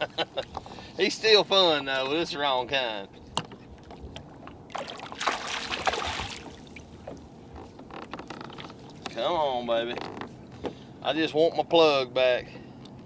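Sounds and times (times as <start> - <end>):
fish splashing in water: 4.7 - 7.2.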